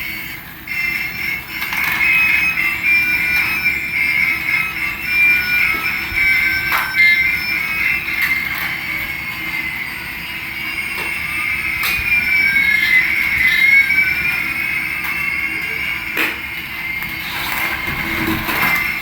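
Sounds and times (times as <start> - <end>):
toy helicopter motors whining: 0.0 - 19.0.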